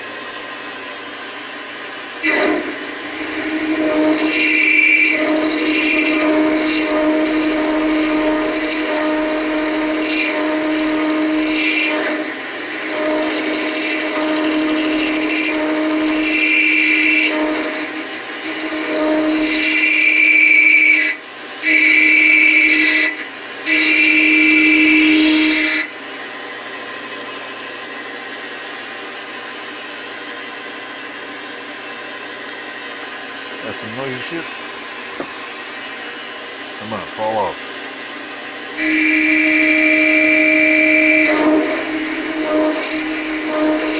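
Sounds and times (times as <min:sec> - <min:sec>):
lathe humming: 0:00.0 - 0:28.4, 0:30.8 - 0:43.9
cutting tool screeching: 0:02.2 - 0:21.2, 0:38.8 - 0:43.9.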